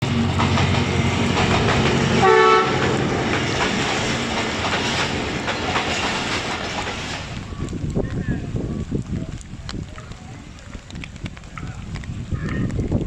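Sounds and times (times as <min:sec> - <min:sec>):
wheels clattering over rail joints: 0:00.0 - 0:07.8
locomotive running: 0:00.0 - 0:08.1
train horn blast: 0:02.1 - 0:03.1.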